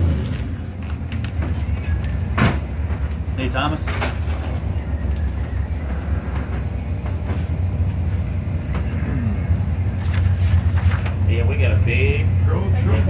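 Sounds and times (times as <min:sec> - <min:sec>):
low mechanical rumble: 0:00.0 - 0:13.0.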